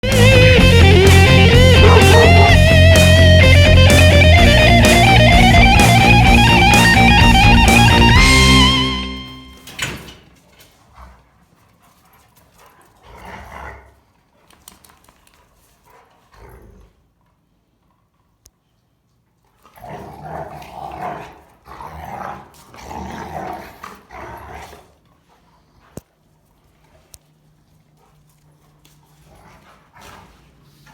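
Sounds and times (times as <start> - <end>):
dogs growling: 0.0 - 8.6, 12.4 - 14.1, 15.9 - 17.1, 19.6 - 25.8, 28.0 - 30.9.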